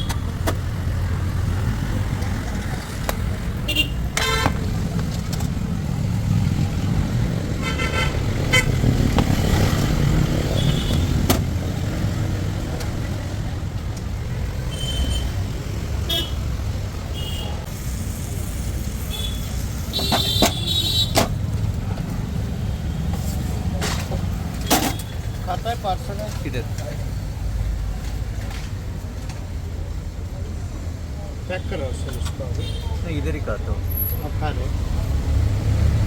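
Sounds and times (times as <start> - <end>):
vehicle horns honking: 0.0 - 0.4, 3.6 - 4.7, 7.6 - 8.9, 10.5 - 11.3, 14.6 - 15.4, 16.0 - 16.4, 17.1 - 17.6, 19.1 - 21.3
road traffic: 0.0 - 36.0.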